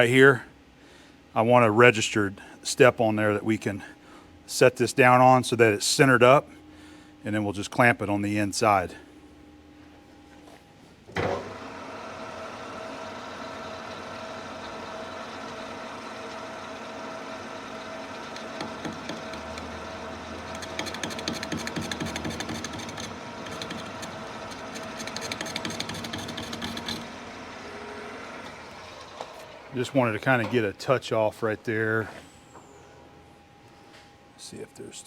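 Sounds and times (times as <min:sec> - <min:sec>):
lathe gear whine: 0:11.2 - 0:30.8.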